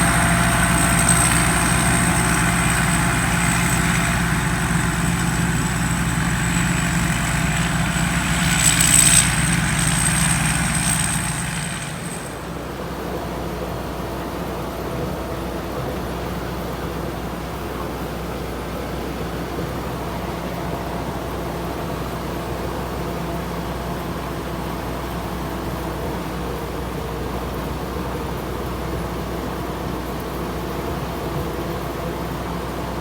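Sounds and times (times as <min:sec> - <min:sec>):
thin high whine: 0:00.0 - 0:12.9
combine harvester running: 0:00.0 - 0:13.2.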